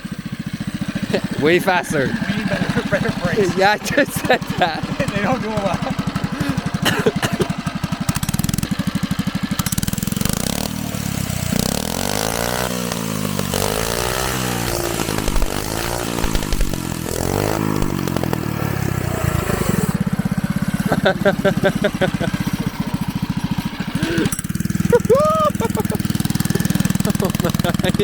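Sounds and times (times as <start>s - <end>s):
mini-bike engine revving: 0.0s - 28.0s.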